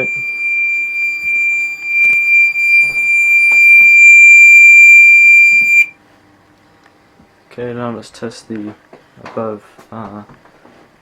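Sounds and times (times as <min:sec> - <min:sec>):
fire alarm high-pitched tone: 0:00.0 - 0:05.9.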